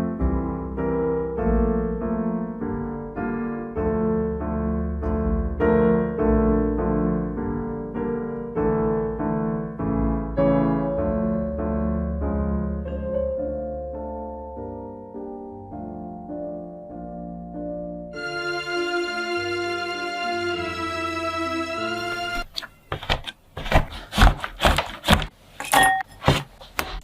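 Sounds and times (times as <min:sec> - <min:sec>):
gentle piano piece: 0:00.0 - 0:22.5.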